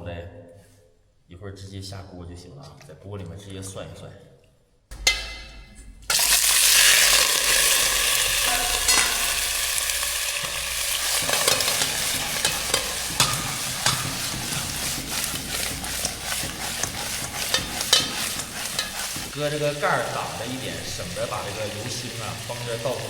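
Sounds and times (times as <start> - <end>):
meat sizzling in hot oil: 6.1 - 23.0.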